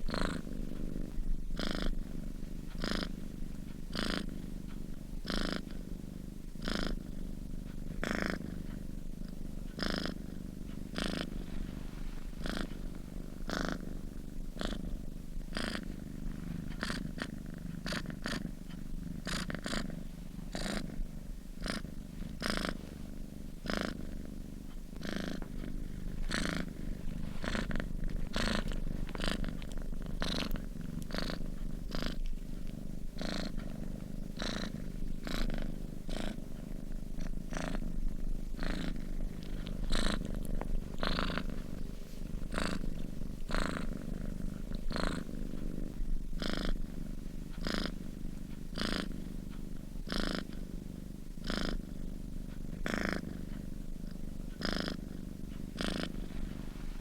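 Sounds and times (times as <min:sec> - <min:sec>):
cat purring: 0:00.0 - 0:57.0
cat breathing: 0:25.0 - 0:35.4.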